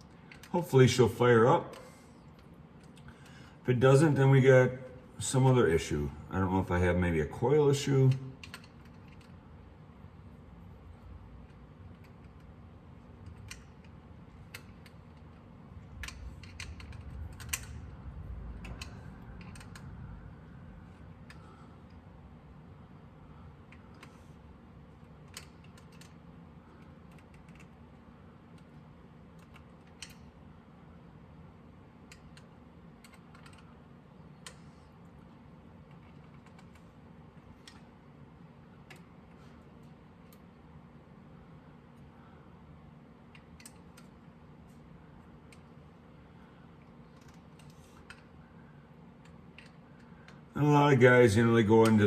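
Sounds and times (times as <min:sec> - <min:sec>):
low steady hum: 0:00.0 - 0:52.0
metal parts and tools clicking: 0:13.2 - 0:17.9, 0:18.5 - 0:20.0.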